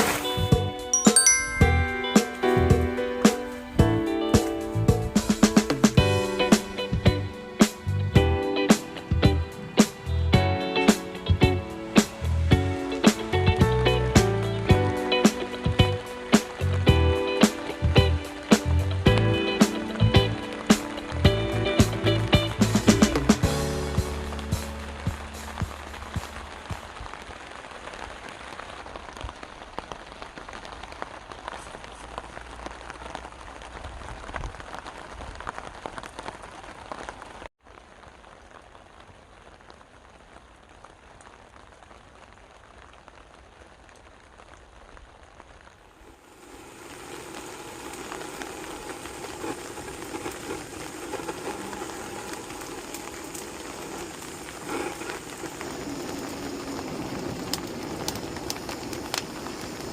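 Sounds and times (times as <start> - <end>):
steady rain falling: 0.0 - 59.9
sharp raindrop ticks: 8.7 - 37.4, 46.7 - 59.9.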